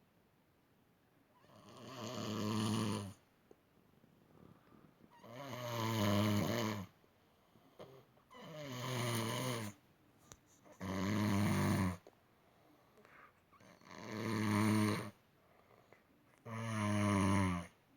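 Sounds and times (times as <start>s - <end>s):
person snoring loudly: 1.4s - 3.2s, 5.2s - 6.9s, 8.4s - 9.8s, 10.8s - 12.0s, 13.8s - 15.2s, 16.5s - 17.7s.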